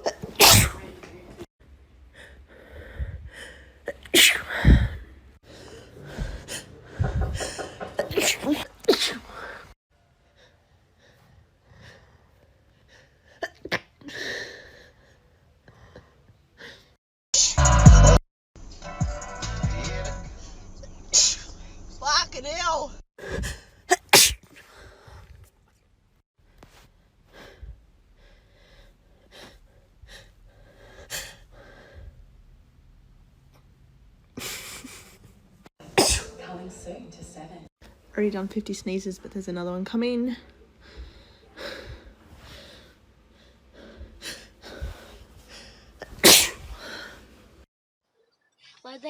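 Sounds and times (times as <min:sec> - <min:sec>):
woman sneezing: 0:00.0 - 0:00.9, 0:03.9 - 0:05.0, 0:08.0 - 0:09.3, 0:23.9 - 0:24.6, 0:36.0 - 0:36.4, 0:46.0 - 0:46.7
person breathing quietly: 0:02.1 - 0:03.8.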